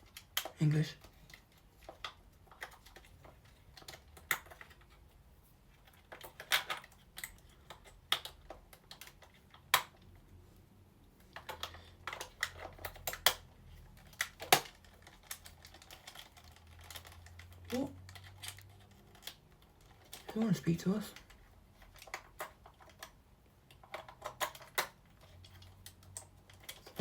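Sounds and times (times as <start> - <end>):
plastic toy clicks and knocks: 0.0 - 5.1, 5.8 - 10.2, 11.2 - 27.0.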